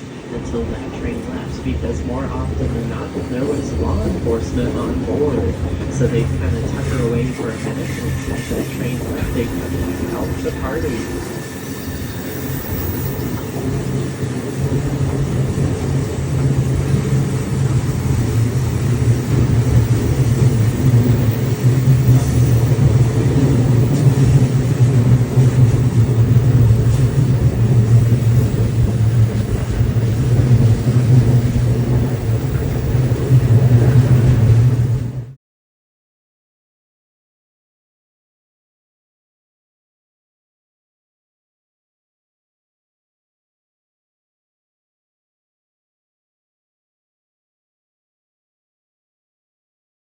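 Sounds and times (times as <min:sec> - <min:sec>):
train rumbling: 0:00.0 - 0:35.4.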